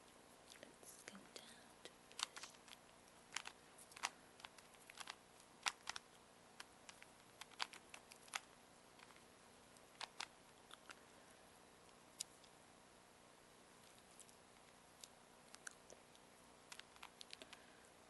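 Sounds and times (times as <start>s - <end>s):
plastic puzzle cube clicking: 2.1s - 6.0s, 6.6s - 9.2s, 10.0s - 11.0s, 16.7s - 17.6s.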